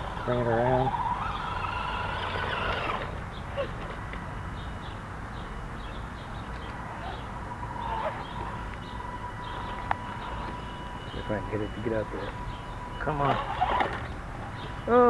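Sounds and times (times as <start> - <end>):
electric motor whining: 0.0 - 4.0, 6.8 - 10.7, 12.2 - 14.6.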